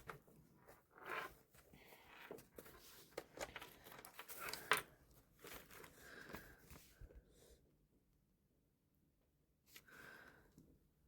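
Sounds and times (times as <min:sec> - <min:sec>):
hands rustling things on a table: 0:00.0 - 0:07.2.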